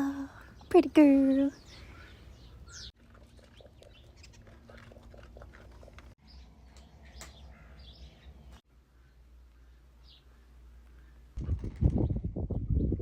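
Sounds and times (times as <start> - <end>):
birds chirping: 0.0 - 11.3.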